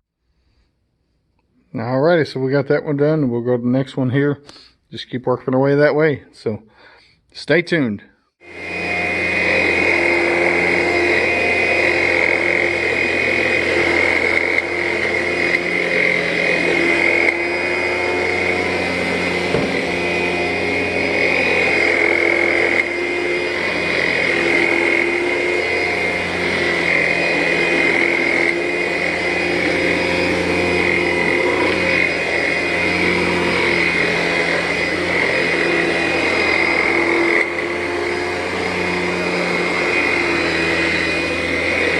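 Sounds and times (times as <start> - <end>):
vacuum cleaner running on carpet: 8.4 - 41.9.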